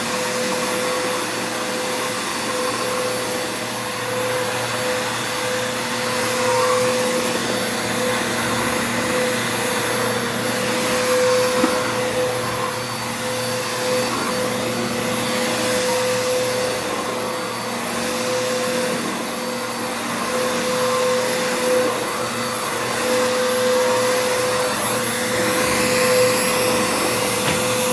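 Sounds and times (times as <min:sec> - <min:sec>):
vacuum cleaner motor whine: 0:00.0 - 0:27.9.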